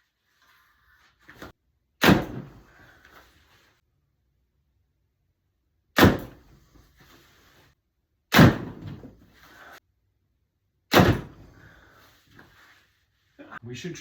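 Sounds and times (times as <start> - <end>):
arrow hitting target: 2.0 - 2.7, 6.0 - 6.4, 8.3 - 9.1, 10.9 - 11.5.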